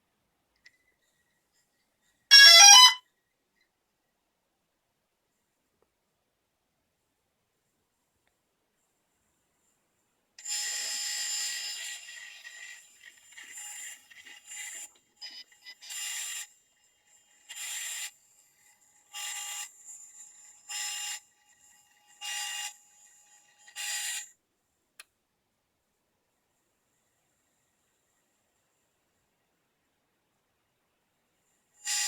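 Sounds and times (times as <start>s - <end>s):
gimbal motors high-pitched buzz: 2.3s - 3.0s.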